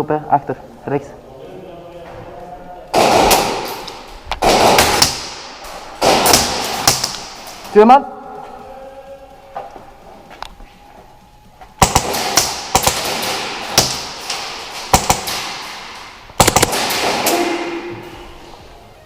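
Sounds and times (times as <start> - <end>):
airsoft guns firing: 2.9 - 7.7, 11.8 - 18.2.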